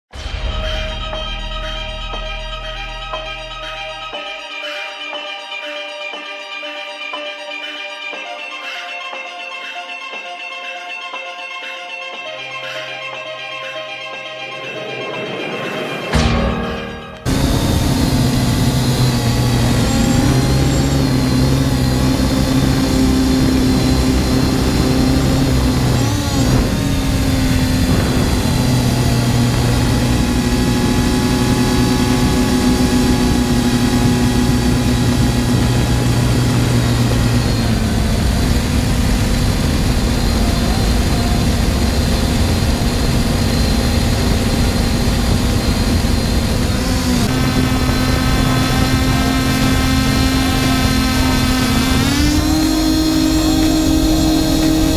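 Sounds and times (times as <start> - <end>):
drone propellers whirring: 17.2 - 54.9.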